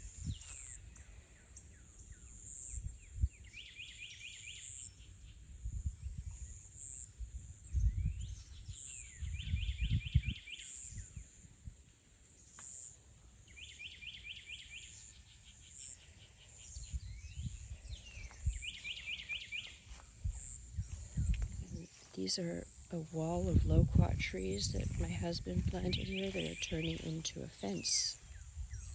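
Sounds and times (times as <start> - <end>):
songbird singing: 0.0 - 28.9
low thumps and rumbles: 23.2 - 26.9.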